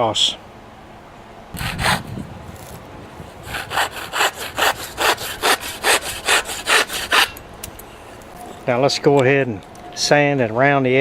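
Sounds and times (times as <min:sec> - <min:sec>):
hand saw cutting wood: 0:01.6 - 0:02.2, 0:03.3 - 0:07.4.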